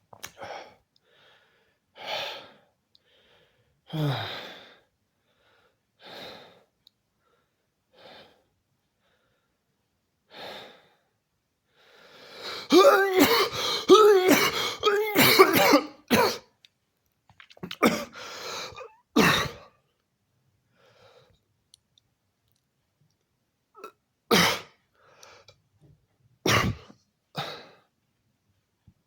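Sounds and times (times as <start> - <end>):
person coughing: 12.6 - 16.5, 17.6 - 19.7, 23.8 - 24.8, 26.5 - 27.7.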